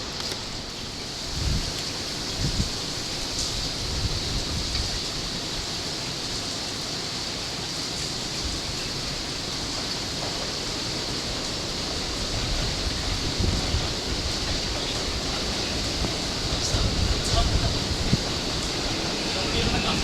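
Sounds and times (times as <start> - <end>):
high hiss: 0.0 - 20.0
wind rumbling on microphone: 0.1 - 6.4, 10.3 - 20.0.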